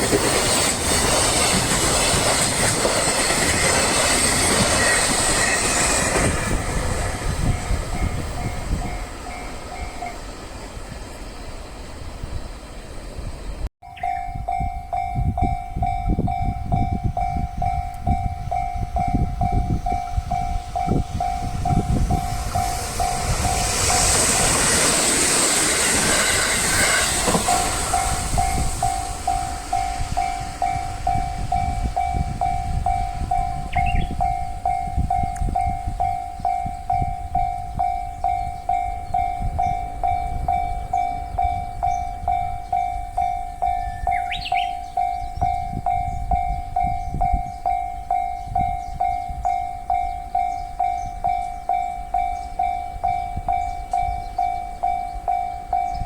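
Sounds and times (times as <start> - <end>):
train wheels knocking on rail joints: 0.0 - 9.5, 19.1 - 37.0
loud hiss: 21.9 - 32.0
level crossing bell clanging: 27.2 - 56.0.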